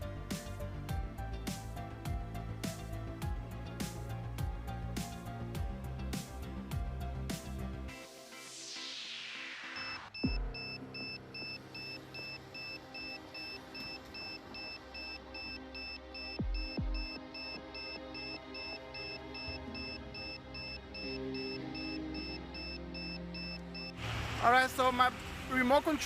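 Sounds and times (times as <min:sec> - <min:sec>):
electronic music sustained tones: 0:00.0 - 0:26.0
high repeating beep: 0:09.7 - 0:24.0.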